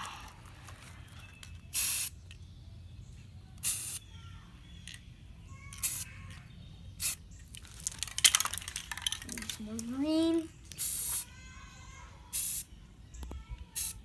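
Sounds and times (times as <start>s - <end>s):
spray paint can bursts: 1.7s - 2.2s, 3.6s - 4.0s, 5.7s - 6.1s, 7.0s - 9.9s, 10.7s - 11.4s, 12.3s - 12.7s, 13.7s - 14.0s.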